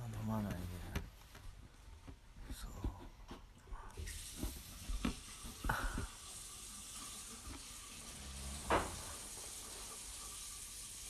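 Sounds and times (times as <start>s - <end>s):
steady rushing hiss: 4.0s - 11.0s.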